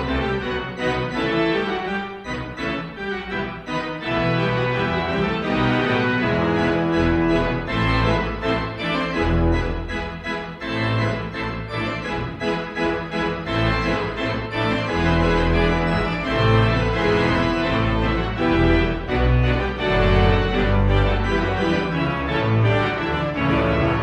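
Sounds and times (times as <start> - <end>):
organ-like keyboard chords: 0.0 - 24.0.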